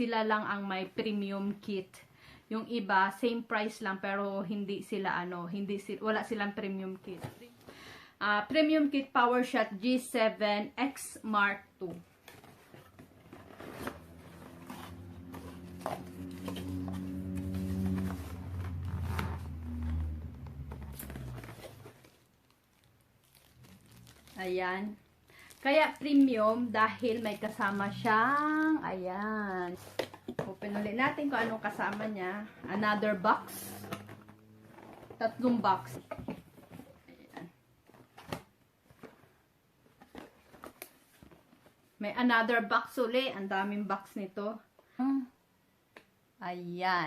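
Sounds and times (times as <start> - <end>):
cardboard packaging rustling: 12.1 - 37.0
low steady hum: 12.3 - 37.3.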